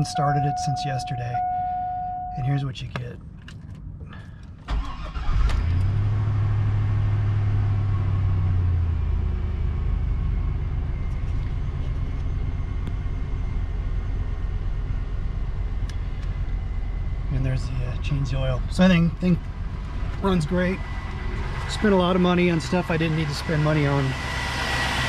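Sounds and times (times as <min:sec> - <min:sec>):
starter cranking engine: 0:04.7 - 0:05.6
car engine idling: 0:08.8 - 0:25.0.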